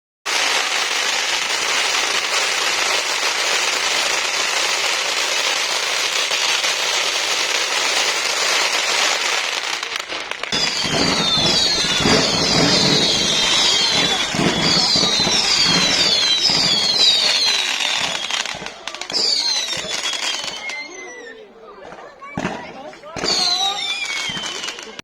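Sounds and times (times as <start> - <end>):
fireworks crackling: 0.3 - 25.0
low rumbling: 10.2 - 17.0
short falling whistles: 10.5 - 18.5, 19.2 - 21.5, 23.3 - 24.9.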